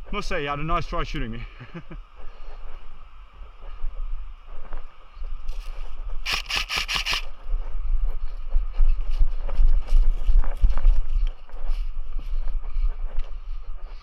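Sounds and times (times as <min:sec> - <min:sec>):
wind rumble: 0:00.0 - 0:14.0
gear rubbing against camera: 0:06.3 - 0:07.3
sharp snaps: 0:06.3 - 0:07.3.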